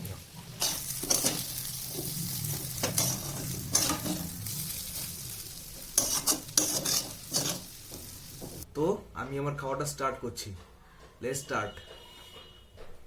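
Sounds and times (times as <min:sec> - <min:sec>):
utensil scraping a dish: 0:06.0 - 0:07.7.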